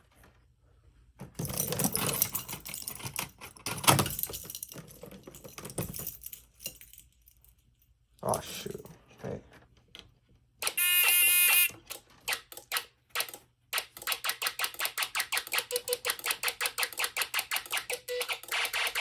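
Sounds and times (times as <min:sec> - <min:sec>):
warbling buzzer tone: 0:10.6 - 0:11.8.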